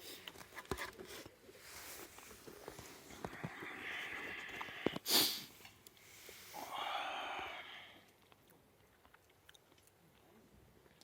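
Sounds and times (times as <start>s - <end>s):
person breathing: 3.0s - 8.1s.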